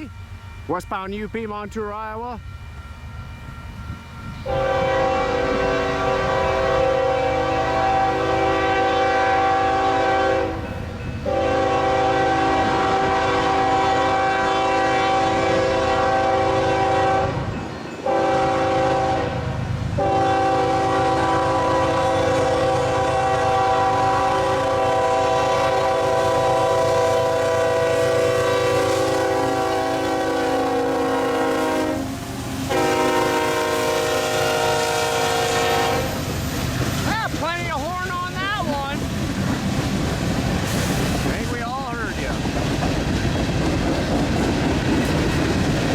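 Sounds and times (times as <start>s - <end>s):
train rumbling past: 0.0s - 45.9s
locomotive air horn blasts: 4.4s - 36.2s.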